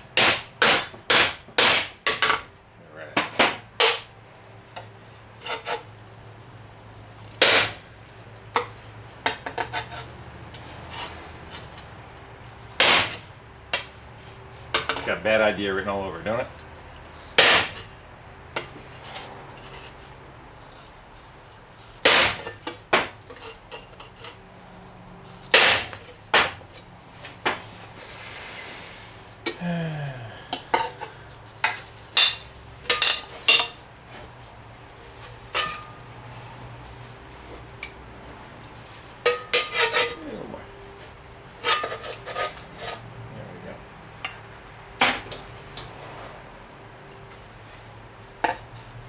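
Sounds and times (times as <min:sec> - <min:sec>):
metallic clanks on shovel blade: 0:03.2 - 0:04.1, 0:22.0 - 0:24.4, 0:39.3 - 0:40.2.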